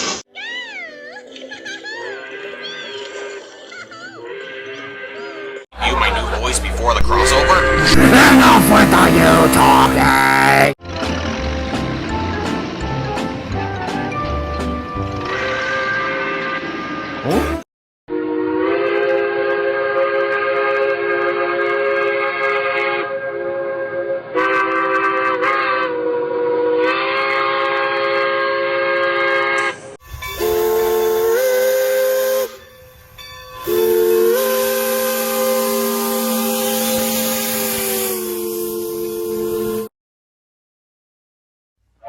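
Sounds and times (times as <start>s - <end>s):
steam whistle chord blasts: 6.4s - 10.8s, 14.8s - 17.0s, 18.1s - 39.9s
steam hissing: 30.1s - 39.4s.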